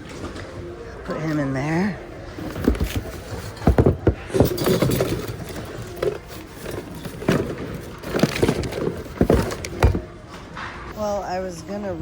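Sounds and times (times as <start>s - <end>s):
objects clattering in a bin: 2.3s - 10.9s.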